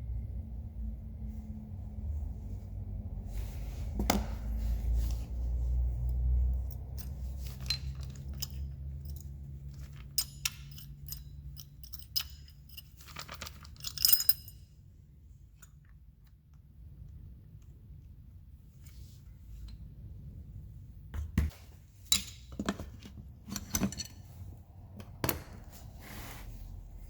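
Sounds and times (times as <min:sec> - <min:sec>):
metal parts clinking: 0:06.0 - 0:14.7.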